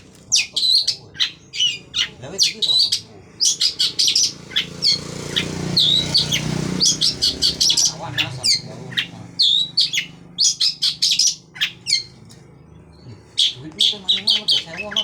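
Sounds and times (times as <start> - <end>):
bird chattering and whistling: 0.0 - 15.0.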